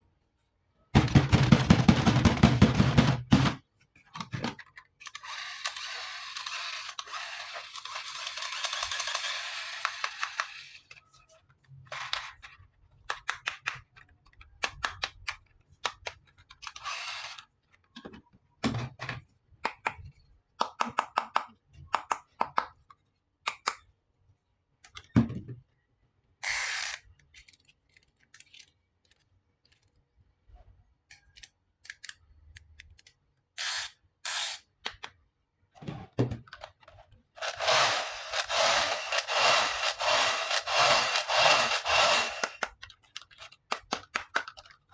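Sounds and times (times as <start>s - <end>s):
plastic toy pieces clicking: 5.0s - 11.0s, 37.4s - 44.9s.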